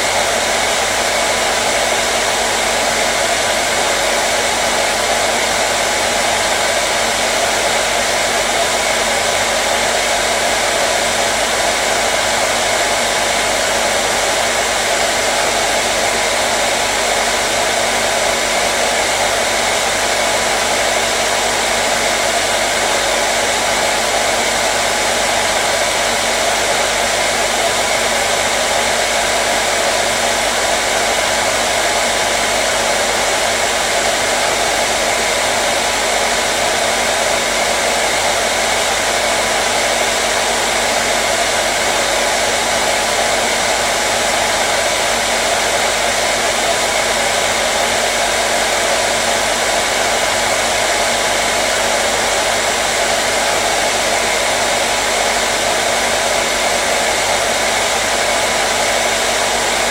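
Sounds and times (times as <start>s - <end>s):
hair dryer running: 0.0s - 59.9s.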